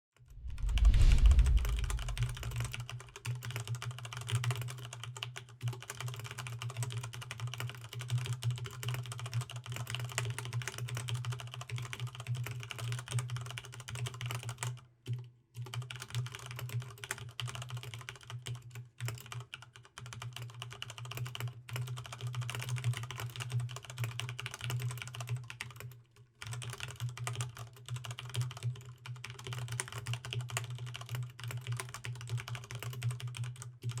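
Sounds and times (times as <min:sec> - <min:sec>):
steady low hum: 0:00.3 - 0:02.8
fast typing on mechanical keyboard: 0:04.0 - 0:14.8, 0:15.6 - 0:34.0.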